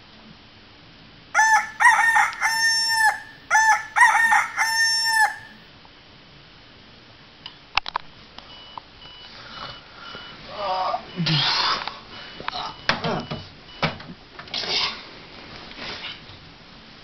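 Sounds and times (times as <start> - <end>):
rooster crowing: 1.4 - 5.6.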